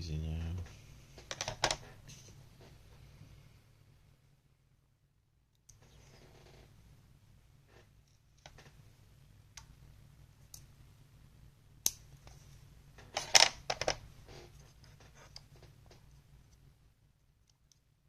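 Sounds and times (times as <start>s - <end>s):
clicks and scratches of handling parts: 11.8s - 16.6s.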